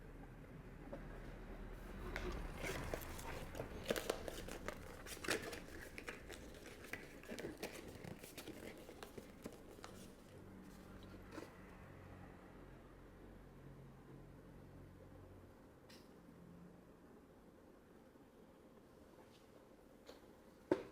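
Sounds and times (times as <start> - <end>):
packaging crinkling and tearing: 2.0 - 10.4.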